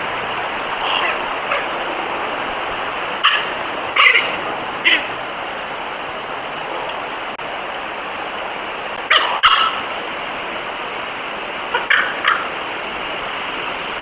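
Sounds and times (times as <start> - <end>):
steady hiss: 0.0 - 14.0
wolves whining and yipping: 3.2 - 5.2.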